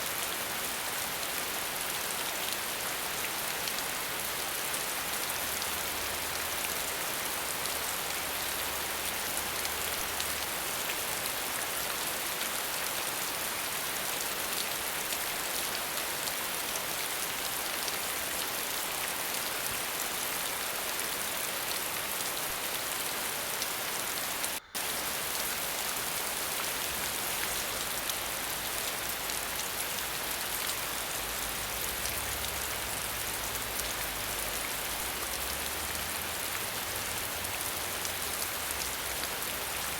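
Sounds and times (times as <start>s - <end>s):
waterfall hiss: 0.0s - 39.9s.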